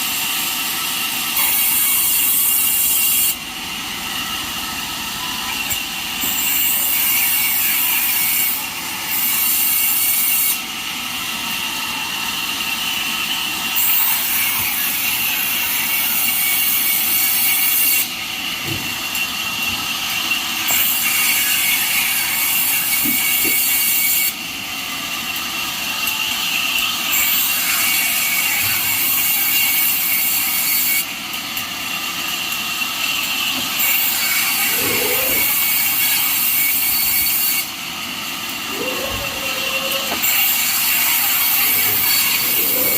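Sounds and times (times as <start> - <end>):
sawmill machine running: 0.0 - 42.9
band saw blade cutting log: 5.7 - 10.6, 20.6 - 24.4, 33.2 - 37.7, 38.6 - 42.9.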